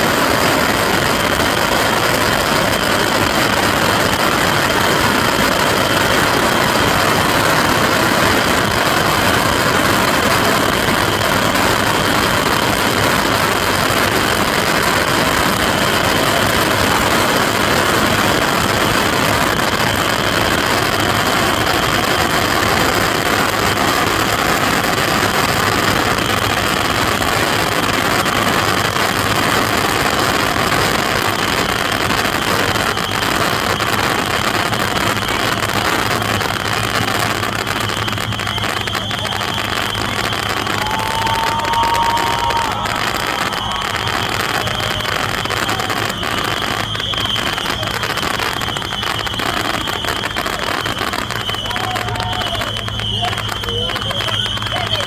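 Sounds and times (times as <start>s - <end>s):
fireworks roaring and crackling: 0.0s - 55.0s.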